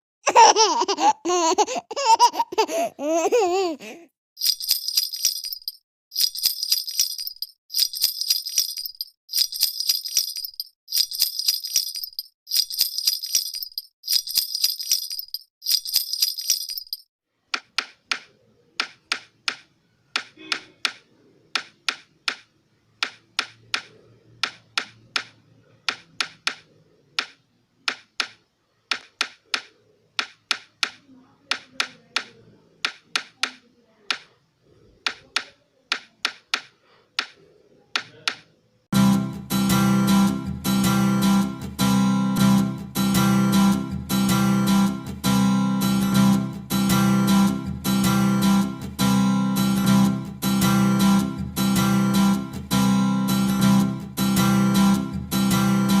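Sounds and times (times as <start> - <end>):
baby rattle bells jingling: 4.4 - 17.1
sharp clicks and clacks: 17.5 - 34.3.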